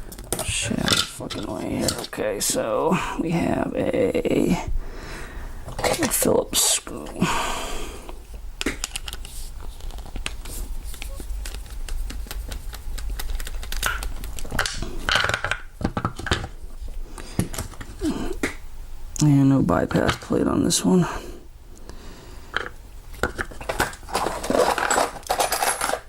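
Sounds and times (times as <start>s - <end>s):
steady low hum: 0.0s - 26.0s.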